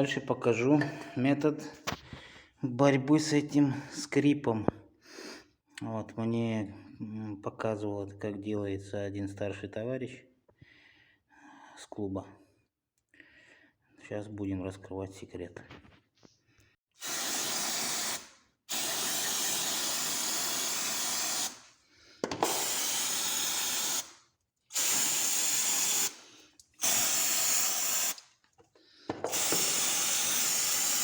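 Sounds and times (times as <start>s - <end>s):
aerosol spray hissing: 17.0s - 21.7s, 22.5s - 24.1s, 24.7s - 28.2s, 29.2s - 31.0s.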